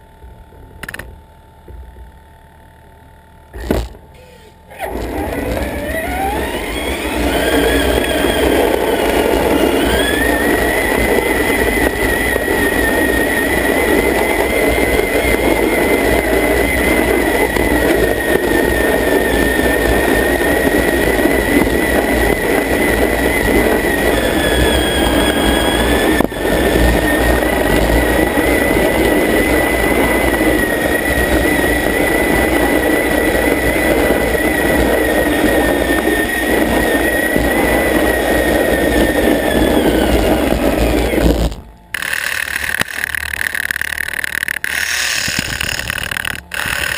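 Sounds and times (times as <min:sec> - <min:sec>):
electric motor whining: 0:03.5 - 0:46.9
rough grinding noise: 0:03.6 - 0:46.9.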